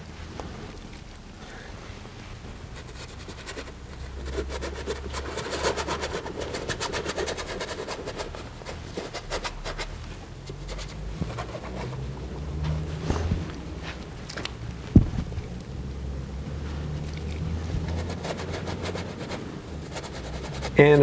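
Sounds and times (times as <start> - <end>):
paintbrush scrubbing on canvas: 2.7 - 12.2, 16.8 - 21.0.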